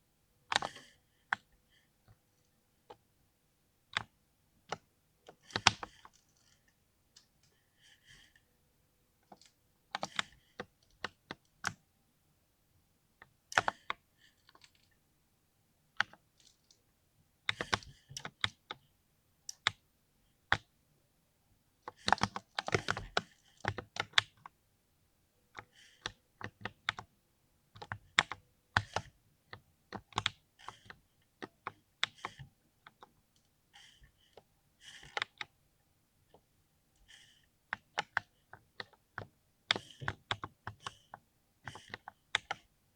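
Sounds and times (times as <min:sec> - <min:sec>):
mechanical keyboard typing: 0:41.7 - 0:42.6.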